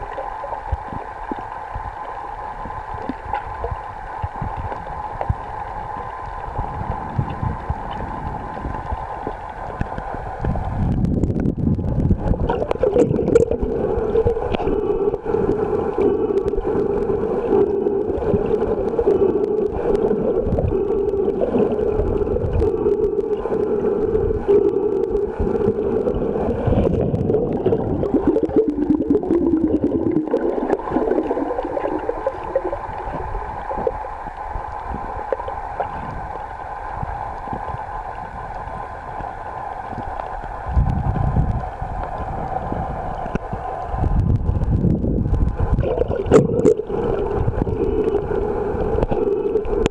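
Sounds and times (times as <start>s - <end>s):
muffled underwater rumble: 0.0s - 49.9s.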